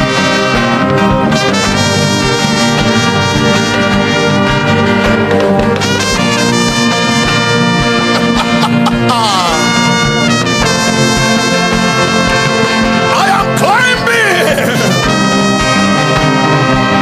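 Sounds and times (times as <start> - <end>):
low beat: 0.0 - 13.6
brass chords: 0.0 - 17.0.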